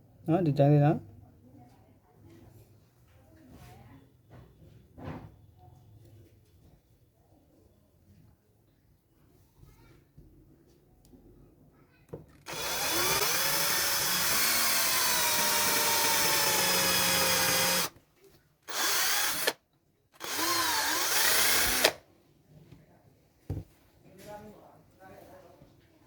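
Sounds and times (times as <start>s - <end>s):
electric drill running: 12.3s - 18.0s, 18.7s - 19.6s, 20.2s - 22.0s.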